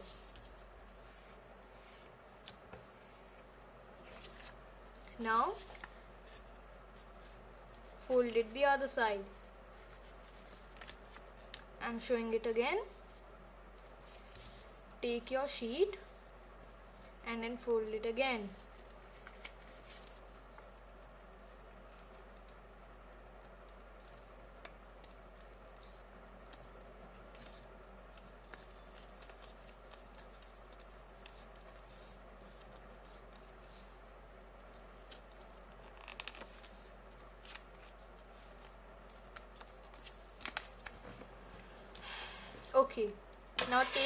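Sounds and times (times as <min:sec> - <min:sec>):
paper rustling and crinkling: 0:00.0 - 0:11.7, 0:13.8 - 0:14.8, 0:18.5 - 0:20.8, 0:24.0 - 0:41.7
low electrical hum: 0:00.0 - 0:44.0.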